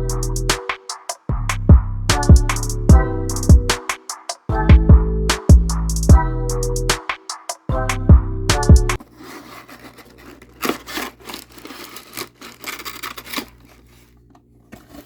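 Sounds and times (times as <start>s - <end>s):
packaging rubbed and scraped: 9.0s - 15.0s.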